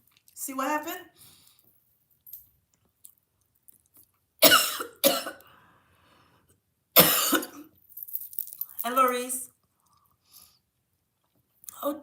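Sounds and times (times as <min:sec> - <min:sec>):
woman coughing: 0:04.4 - 0:05.4, 0:07.0 - 0:07.7.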